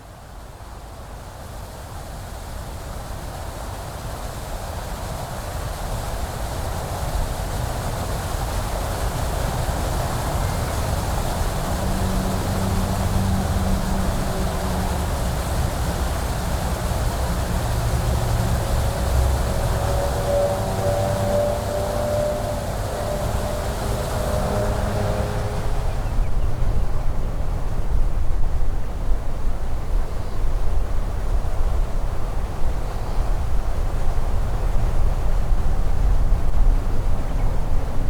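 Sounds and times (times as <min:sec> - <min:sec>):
expressway traffic hum: 0:09.0 - 0:30.2
passing vehicle engine drone: 0:09.5 - 0:27.6.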